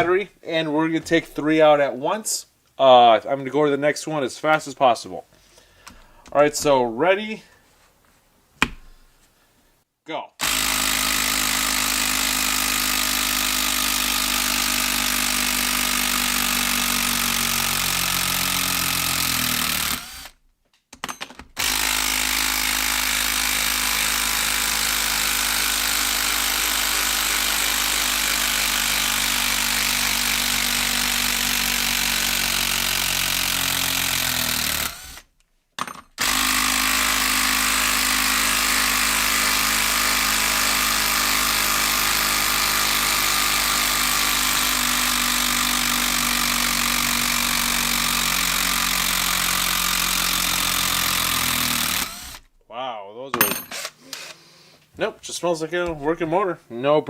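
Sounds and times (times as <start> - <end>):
impact driver hammering: 53.4 - 54.3.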